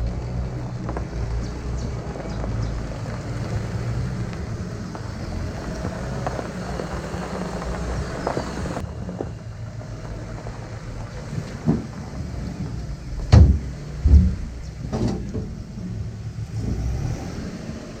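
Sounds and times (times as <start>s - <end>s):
car engine rumbling: 0.0s - 18.0s.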